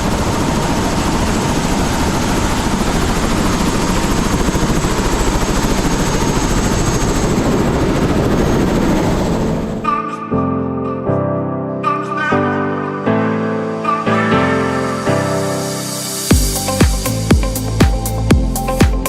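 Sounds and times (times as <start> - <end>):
helicopter rotor and engine: 0.0 - 9.9.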